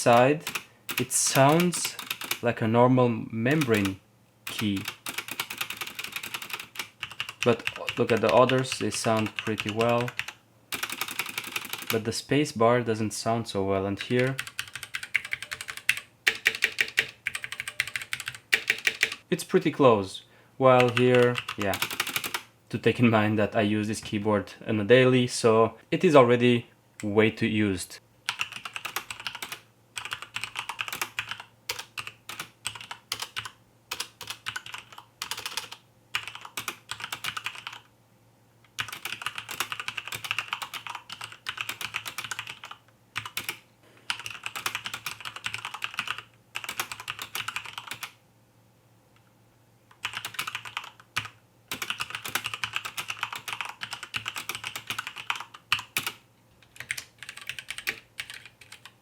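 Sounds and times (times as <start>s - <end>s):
mechanical keyboard typing: 0.0s - 2.4s, 3.5s - 12.0s, 14.0s - 19.2s, 20.8s - 22.4s, 28.3s - 37.9s, 38.8s - 48.2s, 49.9s - 59.0s.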